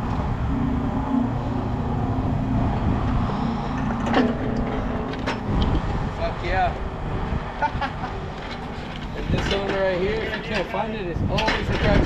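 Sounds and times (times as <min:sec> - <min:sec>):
vehicle engine droning: 0:00.0 - 0:10.7
high squeal falling in pitch: 0:00.5 - 0:04.0.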